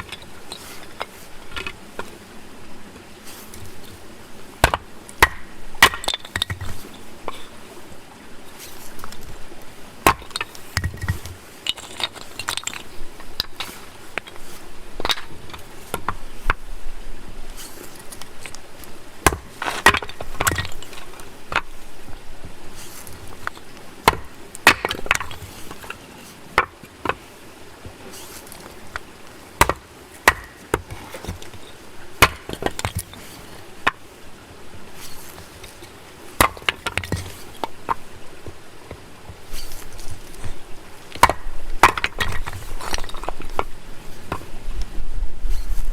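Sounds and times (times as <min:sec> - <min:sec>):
wood fire crackling and popping: 0:05.2 - 0:06.6, 0:29.6 - 0:31.6.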